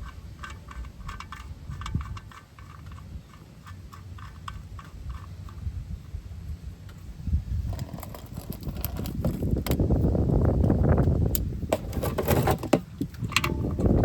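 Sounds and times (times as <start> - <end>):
hand tools clicking and tapping: 0.0 - 5.7.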